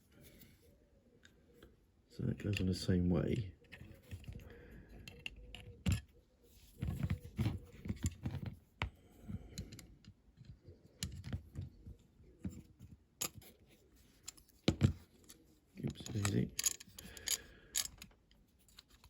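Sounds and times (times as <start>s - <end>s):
model parts clicking and tapping: 14.2s - 19.0s.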